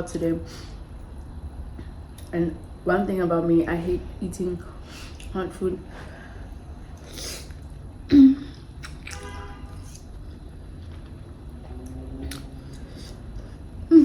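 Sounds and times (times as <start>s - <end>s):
chewing and squishy mouth sounds: 8.6s - 13.6s.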